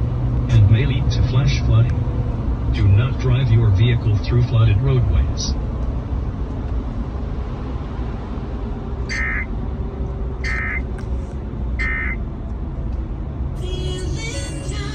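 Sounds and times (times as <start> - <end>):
warbling digital tone bursts: 9.1 - 9.5, 10.4 - 10.8, 11.8 - 12.2.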